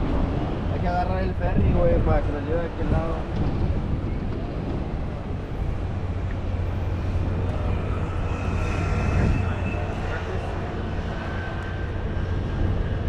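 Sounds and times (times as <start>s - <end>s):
low engine drone: 0.0s - 13.0s
faint high whine: 5.0s - 13.0s.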